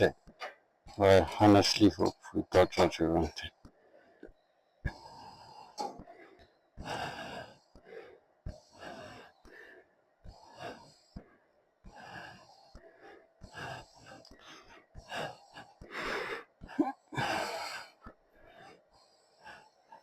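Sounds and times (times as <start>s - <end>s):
breath-like noisy puffs: 4.9s - 20.0s.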